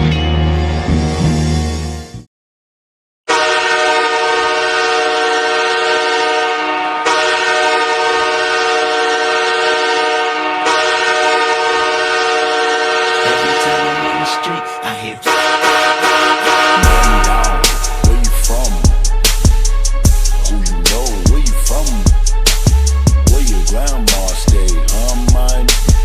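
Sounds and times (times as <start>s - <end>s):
arena goal horn blasts: 3.3s - 19.2s.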